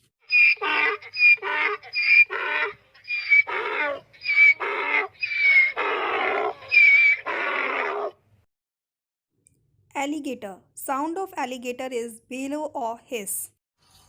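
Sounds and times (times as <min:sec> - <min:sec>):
donkey braying: 0:00.3 - 0:08.2.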